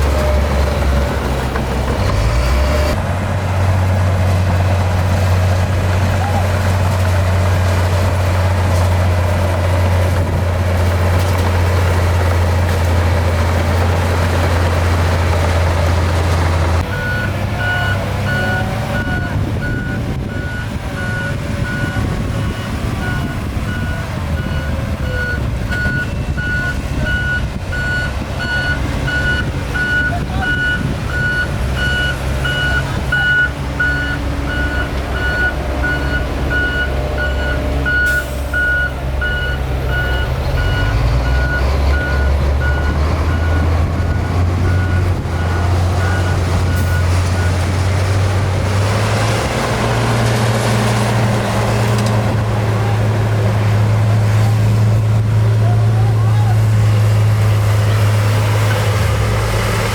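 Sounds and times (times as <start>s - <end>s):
diesel machinery droning: 0.0s - 59.9s
reversing alarm beeping: 16.9s - 47.6s.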